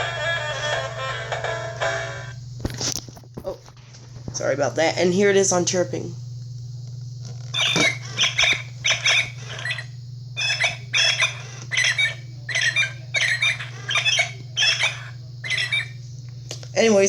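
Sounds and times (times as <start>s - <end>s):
steady low hum: 0.0s - 17.0s
toy bird chirps: 7.6s - 16.0s.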